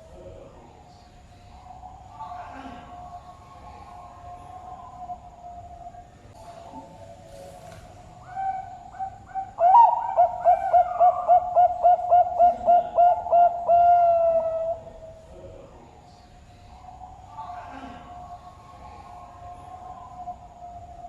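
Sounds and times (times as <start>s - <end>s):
dove cooing: 1.5s - 15.8s.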